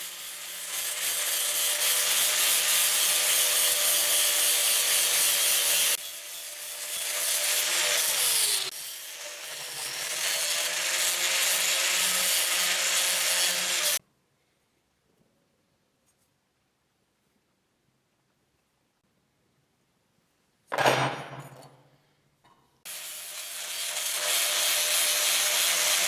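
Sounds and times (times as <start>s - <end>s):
power tool grinding metal: 0.0s - 14.0s, 22.9s - 26.0s.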